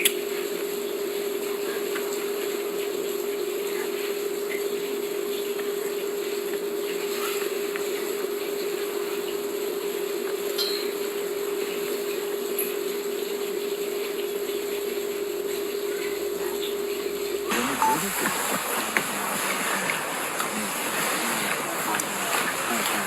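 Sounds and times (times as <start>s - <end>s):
steady hum and hiss: 11.2s - 23.0s
panda chewing bamboo: 17.5s - 23.0s.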